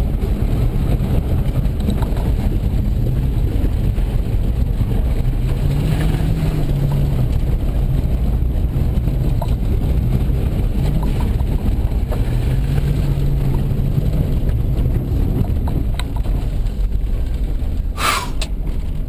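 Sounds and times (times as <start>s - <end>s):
car engine under load: 0.0s - 19.0s
road and wind rumble: 0.0s - 19.0s.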